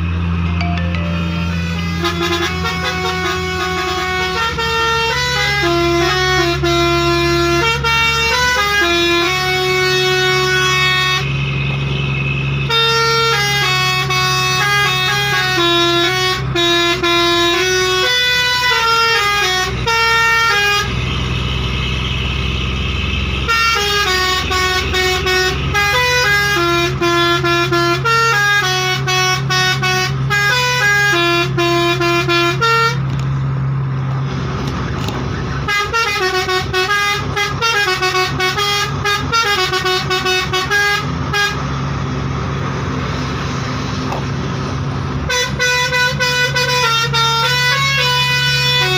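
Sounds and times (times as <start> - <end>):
musical air horn tune: 0.5 - 11.2.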